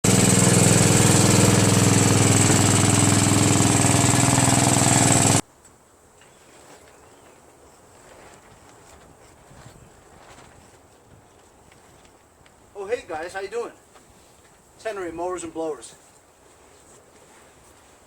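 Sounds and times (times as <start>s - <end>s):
small gasoline engine running: 0.0s - 5.4s
faint outdoor background: 5.4s - 18.0s.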